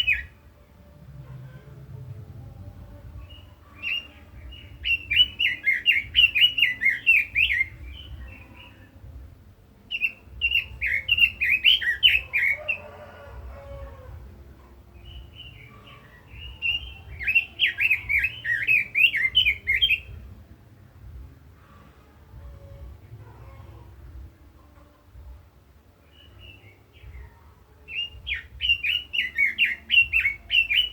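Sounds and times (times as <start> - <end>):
bird warbling song: 0.0 - 0.4, 3.1 - 9.2, 9.9 - 13.2, 14.7 - 20.4, 26.0 - 30.9.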